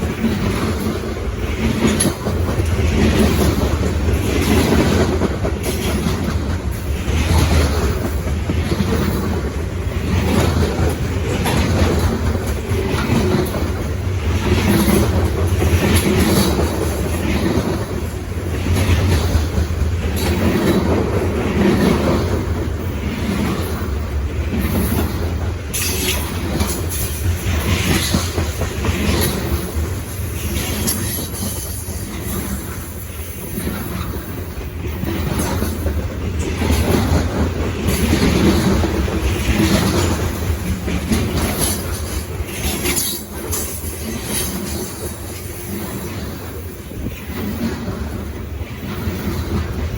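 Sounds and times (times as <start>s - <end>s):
low rumble of train: 0.0s - 49.9s
train wheels clacking over rail joints: 0.0s - 49.9s.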